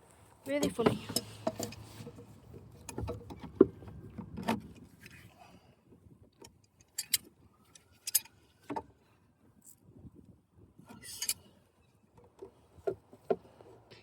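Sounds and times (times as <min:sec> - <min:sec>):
metallic clicks and knocks of tools: 0:06.4 - 0:08.3.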